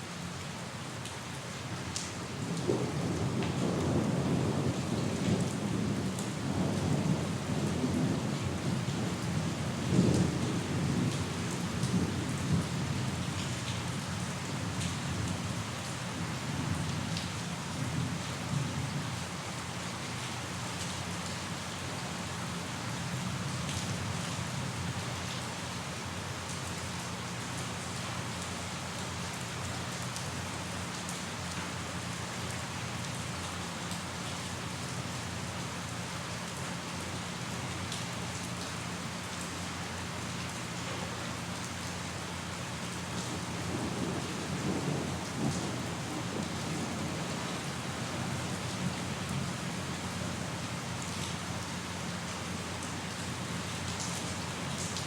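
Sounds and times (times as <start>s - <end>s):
heavy rain falling: 0.0s - 55.0s
low rumble of thunder: 2.3s - 19.2s, 43.0s - 51.2s.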